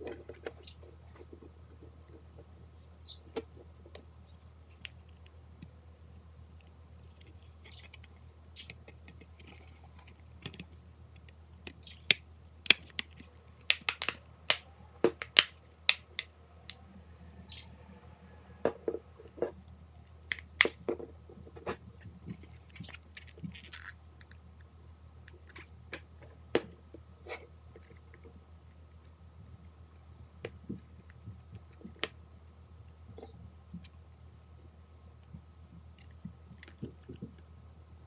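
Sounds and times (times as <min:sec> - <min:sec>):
faint low hum: 0:00.0 - 0:38.0
small hard parts clicking and snapping: 0:10.4 - 0:16.8, 0:20.3 - 0:20.8.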